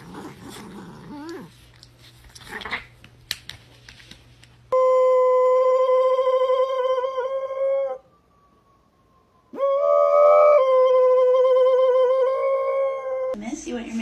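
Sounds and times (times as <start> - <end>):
dog howling: 4.8 - 8.1, 9.5 - 13.4.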